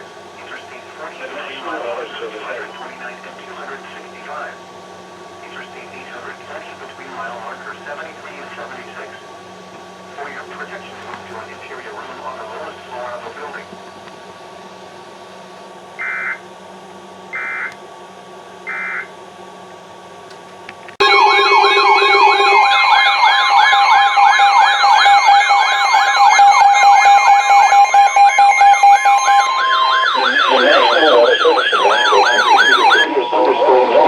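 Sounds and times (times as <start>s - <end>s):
radio channel hiss: 0.0s - 4.6s, 5.4s - 9.3s, 10.1s - 13.8s, 30.1s - 34.0s
electronic sirens yelping: 16.0s - 16.5s, 17.3s - 17.8s, 18.6s - 19.1s, 21.0s - 34.0s.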